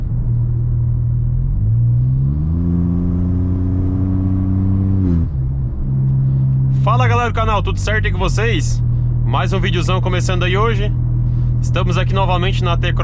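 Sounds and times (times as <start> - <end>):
car engine revving through straight pipe: 1.3 - 6.9.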